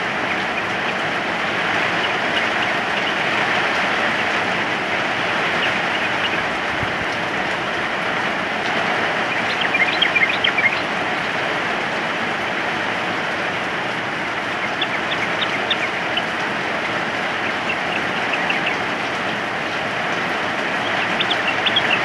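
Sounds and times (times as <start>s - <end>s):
steady rain: 0.0s - 22.0s
bird chirping: 1.8s - 3.4s, 5.4s - 6.5s, 9.2s - 11.4s, 14.5s - 19.2s, 20.8s - 22.0s.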